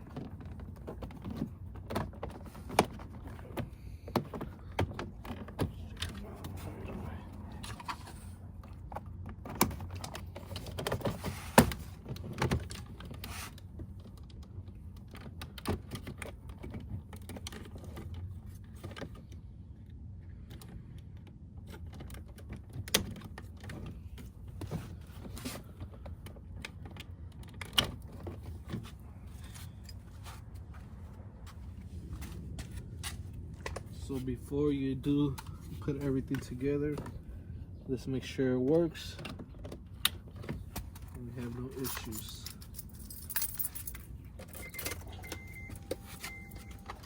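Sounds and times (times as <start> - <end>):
steady low hum: 28.4 - 47.0.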